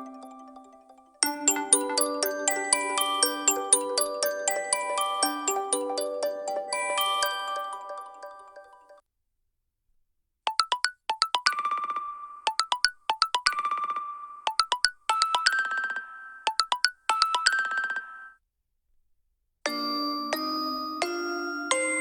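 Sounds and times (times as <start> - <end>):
phone ringtone melody: 0.0 - 9.0, 10.5 - 18.4
ringtone with sustained notes: 0.0 - 9.0, 10.5 - 18.4, 19.7 - 22.0.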